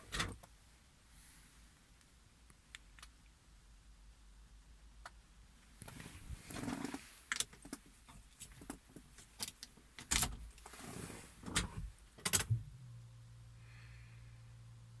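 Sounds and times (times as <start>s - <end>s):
sharp clicks and knocks: 11.6s - 12.6s.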